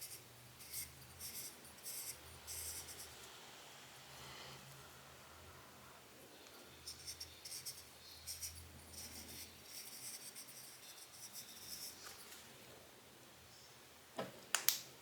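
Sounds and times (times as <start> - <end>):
cotton swab rubbing on glass: 0.0 - 3.2, 6.7 - 12.0.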